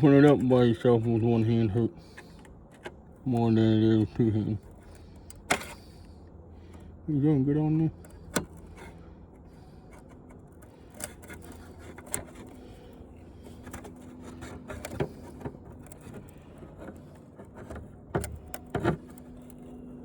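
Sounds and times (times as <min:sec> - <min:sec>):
clicks and knocks of tv parts: 0:02.0 - 0:03.5, 0:04.6 - 0:06.9, 0:07.9 - 0:20.0.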